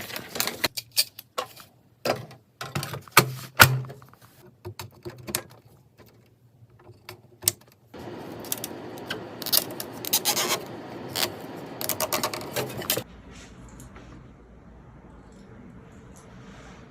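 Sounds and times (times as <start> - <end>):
scratchy rubbing and scraping: 8.5 - 13.1.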